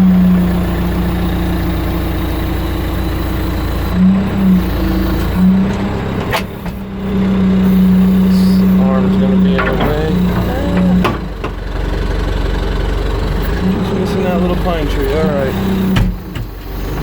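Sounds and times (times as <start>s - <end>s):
backhoe engine running: 0.0s - 17.0s.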